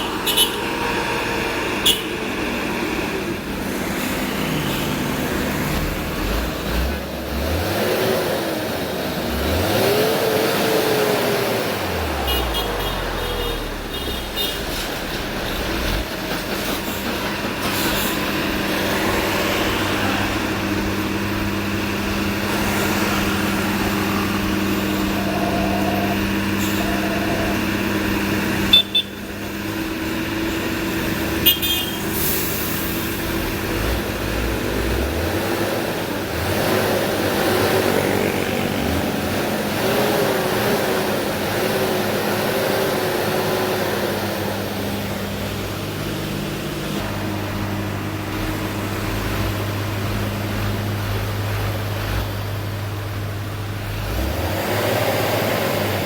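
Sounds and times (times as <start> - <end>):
short horn toot: 0.0 - 0.8, 1.8 - 2.3, 12.2 - 14.9, 24.1 - 29.3, 31.4 - 32.7
heavy truck diesel engines labouring: 0.0 - 56.0.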